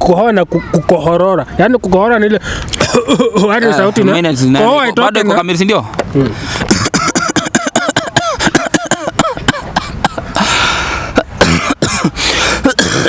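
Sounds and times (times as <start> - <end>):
person coughing rapidly: 2.8 - 3.6, 6.7 - 10.6, 11.2 - 13.0.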